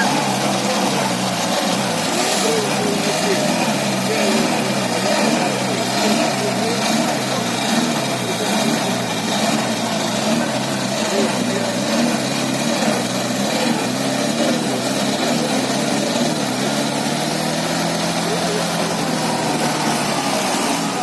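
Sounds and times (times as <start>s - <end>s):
van engine revving under load: 0.0s - 21.0s.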